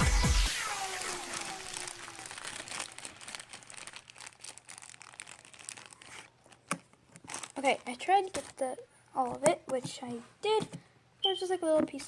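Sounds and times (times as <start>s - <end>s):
falling music tone: 0.0s - 3.0s
slime crackling and popping: 0.6s - 8.6s.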